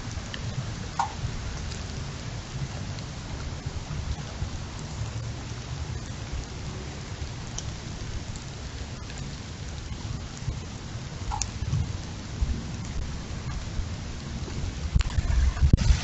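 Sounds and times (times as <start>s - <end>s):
heavy rain in wind: 0.0s - 16.0s
raindrops ticking nearby: 0.0s - 16.0s
low rumble: 11.6s - 16.0s.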